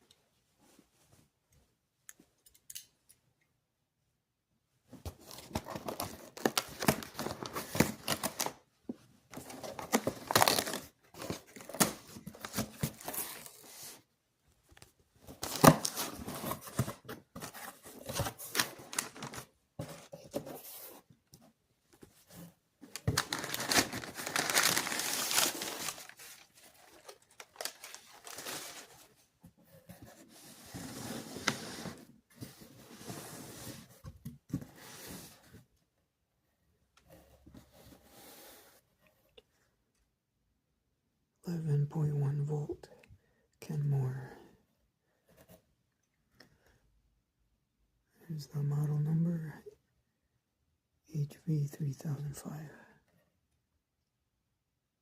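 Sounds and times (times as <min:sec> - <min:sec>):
packaging tearing and crinkling: 0:09.8 - 0:10.9, 0:23.0 - 0:28.8.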